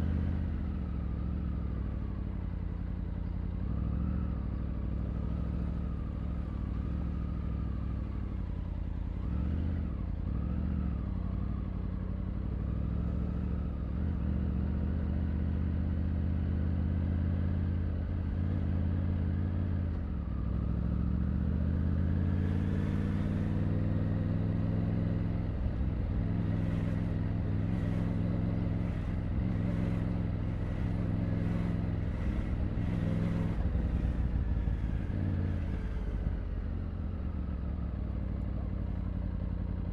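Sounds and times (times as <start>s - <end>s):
motorcycle engine revving: 20.4s - 39.9s.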